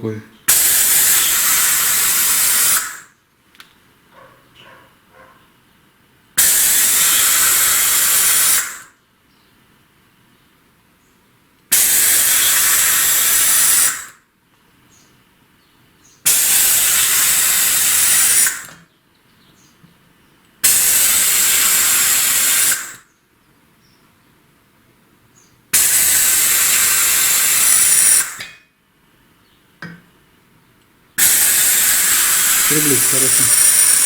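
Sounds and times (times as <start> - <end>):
compressed air hissing: 31.2 - 34.0.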